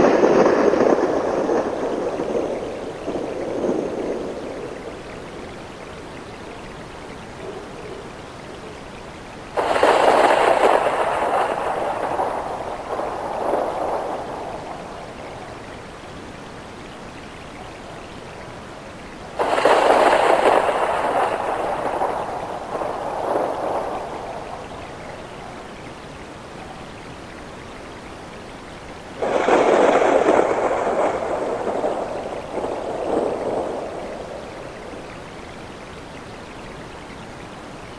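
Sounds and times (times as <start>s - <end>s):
thunder rolling: 0.0s - 6.0s, 9.6s - 16.0s, 19.4s - 25.7s, 29.2s - 35.8s
rain hissing: 0.0s - 37.9s.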